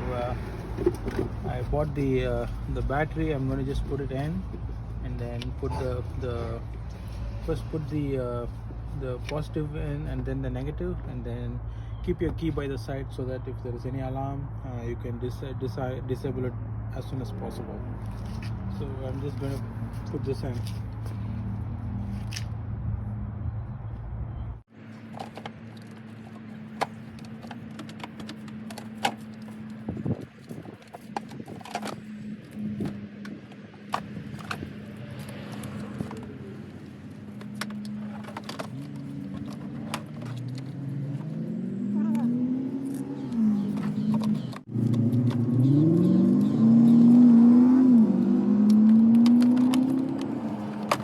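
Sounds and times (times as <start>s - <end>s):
vehicle engine revving: 0.0s - 10.2s, 26.0s - 51.0s.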